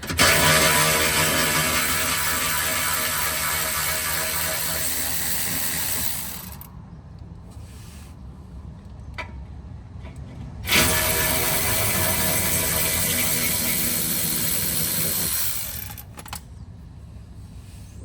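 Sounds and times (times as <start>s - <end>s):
cordless ratchet whirring: 0.0s - 6.7s, 10.6s - 16.4s.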